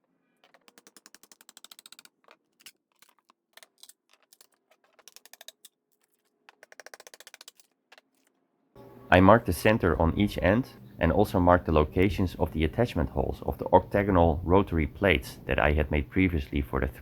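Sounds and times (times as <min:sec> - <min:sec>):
faint rapid clicking: 0:00.4 - 0:08.3.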